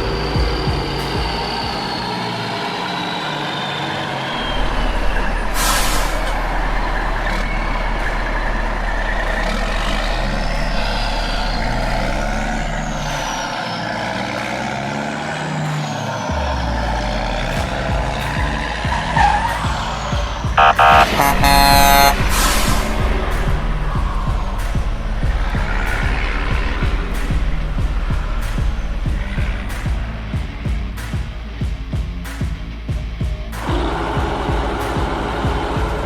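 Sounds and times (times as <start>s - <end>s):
falling whines: 0.0s - 27.3s
heavy machinery engine running: 20.0s - 28.1s.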